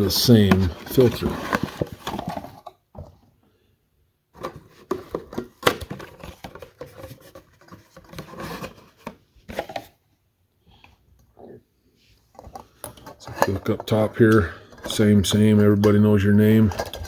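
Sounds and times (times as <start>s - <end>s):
metal cans knocking and scraping: 12.4s - 17.0s.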